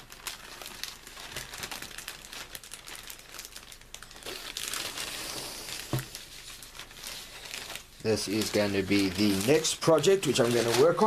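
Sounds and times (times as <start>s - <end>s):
plastic bags crinkling: 0.0s - 11.0s.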